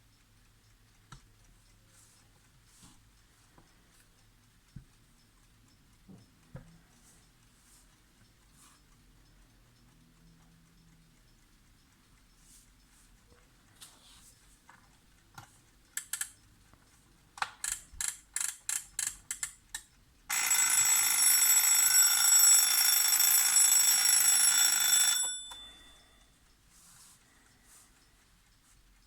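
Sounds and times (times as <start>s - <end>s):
alarm clock clicks: 15.9s - 16.5s, 17.3s - 26.7s
alarm clock ringing: 20.3s - 26.4s.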